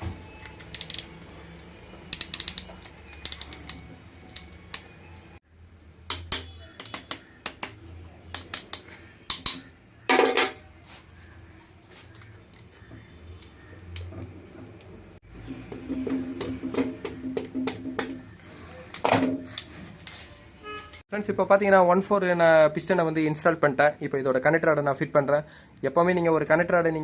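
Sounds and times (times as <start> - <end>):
sharp metal clicks and taps: 0.4 - 1.2, 2.1 - 5.3, 6.1 - 9.7.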